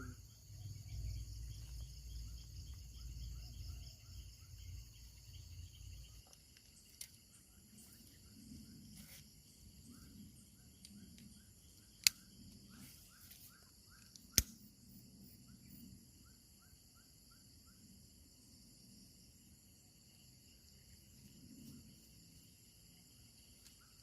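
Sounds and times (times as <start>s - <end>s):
bird chirping: 0.0s - 18.6s
crickets chirping: 0.0s - 24.0s
sharp clicks: 12.0s - 12.3s, 14.0s - 14.7s.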